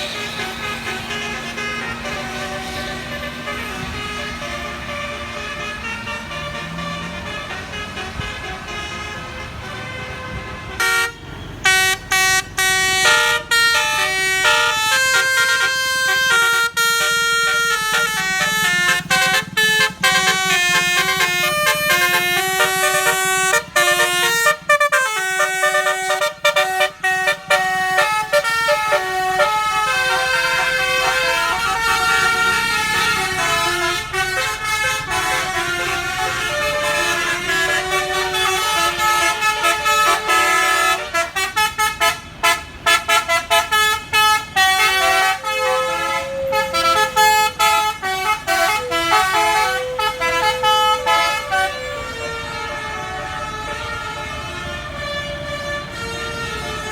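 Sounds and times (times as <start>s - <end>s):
multi-tone melodic bus horn: 0.0s - 56.9s.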